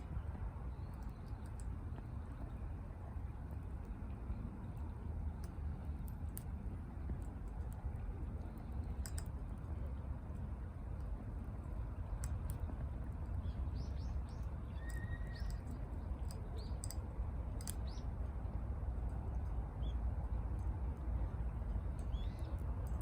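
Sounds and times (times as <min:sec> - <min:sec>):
wood fire crackling and popping: 0:00.7 - 0:04.0, 0:04.7 - 0:18.0, 0:21.8 - 0:23.0
birds chirping: 0:13.4 - 0:17.0.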